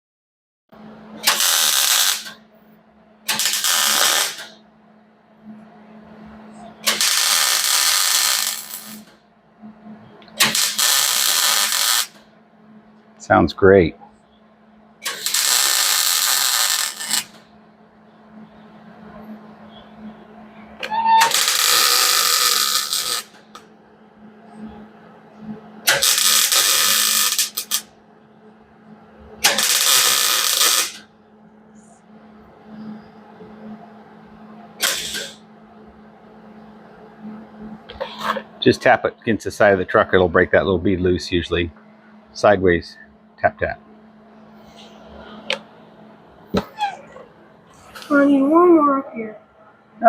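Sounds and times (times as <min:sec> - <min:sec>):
low steady hum: 0:00.8 - 0:15.4, 0:16.3 - 0:50.0
welder arc crackling: 0:01.2 - 0:02.4, 0:03.3 - 0:04.6, 0:06.8 - 0:09.2, 0:10.3 - 0:12.3, 0:15.0 - 0:17.4, 0:21.2 - 0:23.6, 0:25.8 - 0:27.9, 0:29.4 - 0:31.1, 0:34.8 - 0:35.4.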